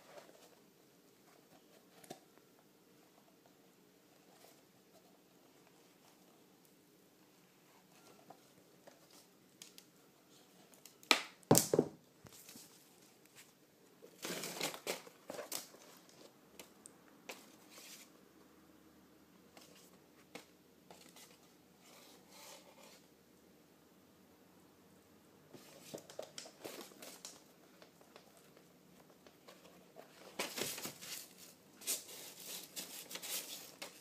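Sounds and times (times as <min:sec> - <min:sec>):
paper crinkling and rustling: 0:12.3 - 0:16.7, 0:25.5 - 0:34.0.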